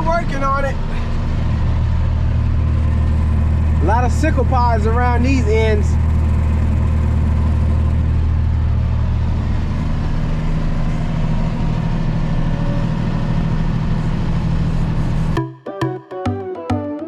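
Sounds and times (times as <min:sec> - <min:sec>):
vehicle engine droning: 0:00.0 - 0:15.4
music with plucked notes: 0:15.4 - 0:17.0.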